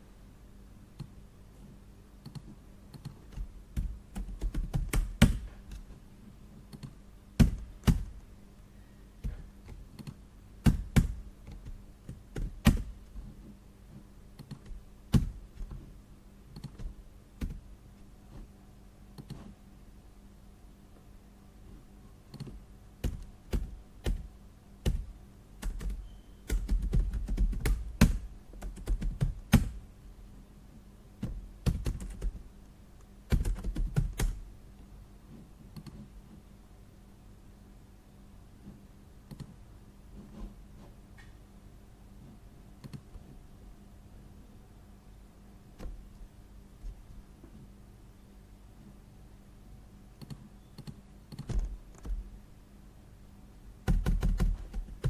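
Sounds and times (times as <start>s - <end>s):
faint low hum: 0.0s - 55.0s
rapid typing clicks: 2.2s - 5.5s, 22.3s - 29.8s, 31.2s - 32.4s, 33.3s - 34.4s, 53.8s - 55.0s.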